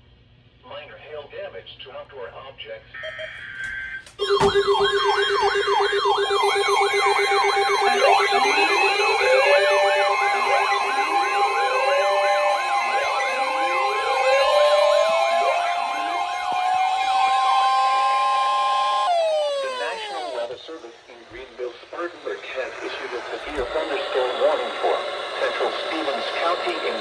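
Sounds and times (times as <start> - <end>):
siren yelp: 3.0 - 20.6, 22.6 - 27.0
siren wail: 3.1 - 20.6
steady low siren tone: 4.2 - 20.6.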